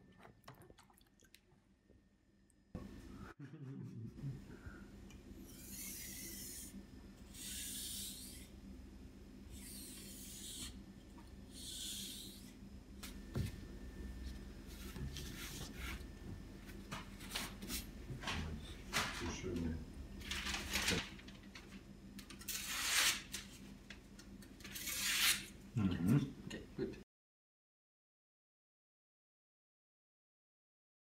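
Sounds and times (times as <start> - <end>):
knife grinding on whetstone: 5.5 - 8.5, 24.7 - 25.5.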